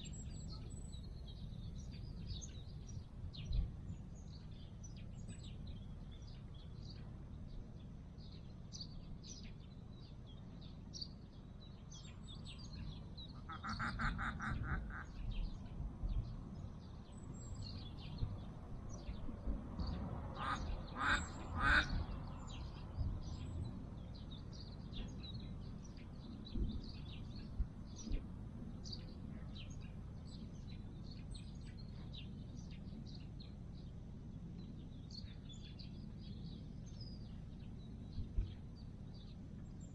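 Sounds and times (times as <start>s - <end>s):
small birds chirping: 0.0s - 39.9s
duck quacking: 13.4s - 15.1s, 20.4s - 21.9s.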